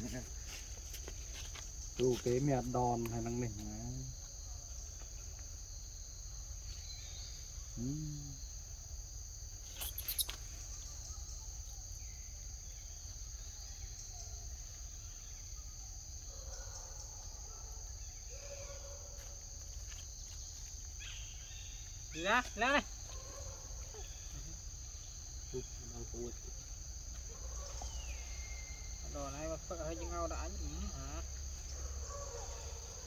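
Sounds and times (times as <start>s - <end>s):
insect chorus: 0.0s - 33.0s.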